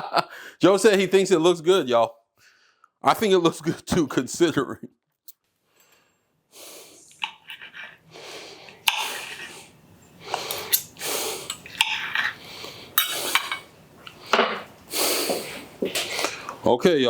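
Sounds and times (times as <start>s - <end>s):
loud hissy breaths: 5.7s - 7.2s, 8.1s - 11.7s, 12.4s - 16.6s
cutlery clicking on a plate: 13.0s - 13.7s.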